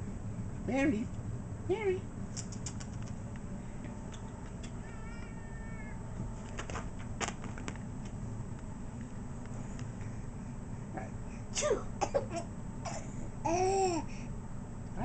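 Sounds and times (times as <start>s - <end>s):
cat meowing: 4.7s - 6.2s.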